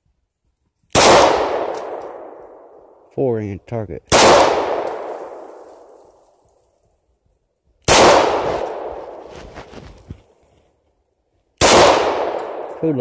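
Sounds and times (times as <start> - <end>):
pistol shots with echo: 0.9 - 2.9, 4.1 - 5.9, 7.8 - 9.0, 11.6 - 12.9.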